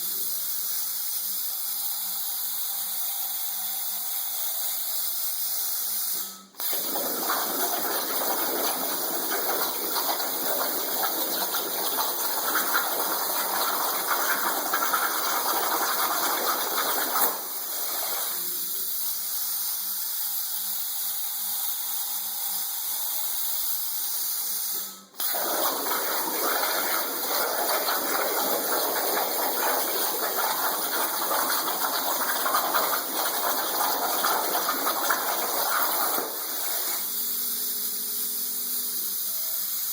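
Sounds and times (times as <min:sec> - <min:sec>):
plasma torch hissing under water: 0:06.0 - 0:18.8, 0:25.2 - 0:37.4.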